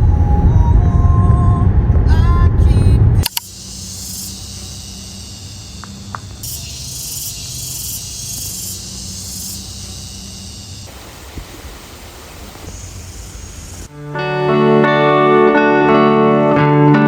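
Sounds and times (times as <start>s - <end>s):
low rumble: 0.0s - 3.9s
insects buzzing: 3.2s - 13.9s.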